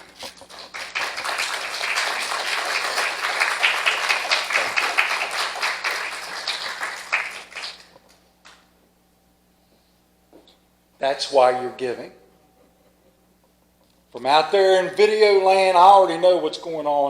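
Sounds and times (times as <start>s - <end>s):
congregation applauding: 0.0s - 8.6s.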